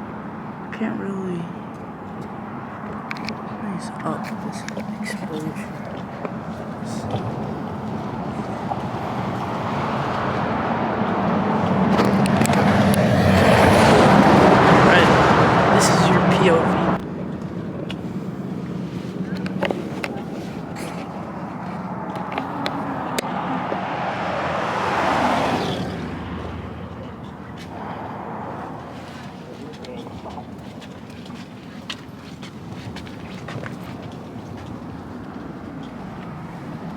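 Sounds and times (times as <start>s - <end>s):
bus engine and road noise: 0.0s - 36.9s
vehicle rushing past: 4.9s - 17.1s, 18.4s - 30.6s.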